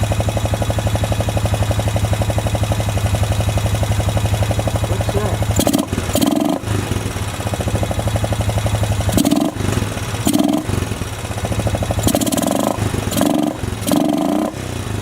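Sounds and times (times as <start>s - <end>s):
atv engine running: 0.0s - 15.0s.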